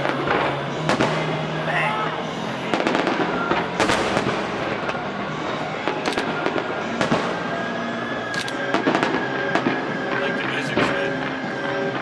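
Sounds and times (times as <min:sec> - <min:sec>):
fireworks bursting with sharp bangs: 0:00.0 - 0:12.0
fireworks crackling: 0:00.0 - 0:12.0.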